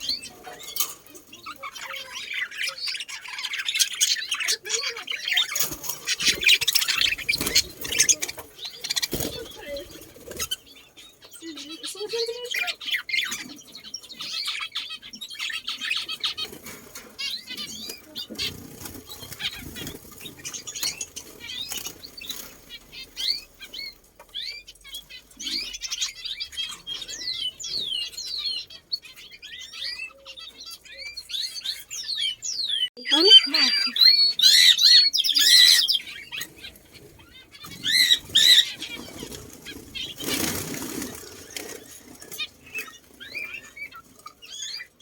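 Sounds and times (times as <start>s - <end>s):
small birds chirping: 0.0s - 45.0s
wings fluttering: 5.4s - 10.8s, 16.0s - 25.8s, 36.0s - 44.9s.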